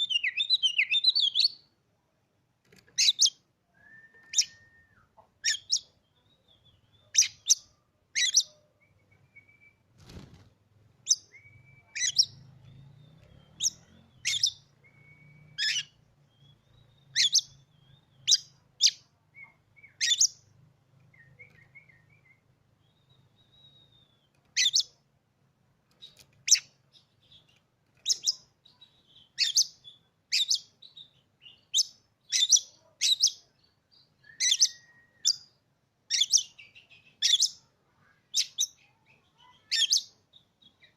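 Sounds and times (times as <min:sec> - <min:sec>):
clear bird whistles: 0:03.0 - 0:07.6, 0:08.2 - 0:09.9, 0:11.1 - 0:20.4, 0:21.1 - 0:24.9, 0:28.0 - 0:37.6.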